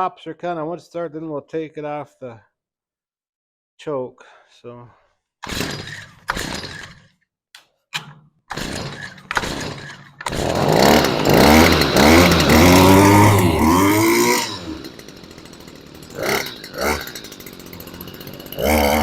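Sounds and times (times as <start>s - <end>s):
weed whacker engine revving: 5.4s - 7.0s, 8.5s - 19.0s
weed whacker engine sputtering: 5.4s - 7.0s, 8.5s - 19.0s.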